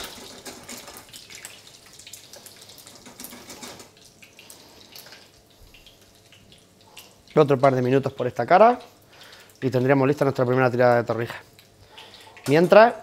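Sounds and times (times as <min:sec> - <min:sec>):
food sizzling in oil: 0:00.0 - 0:07.4.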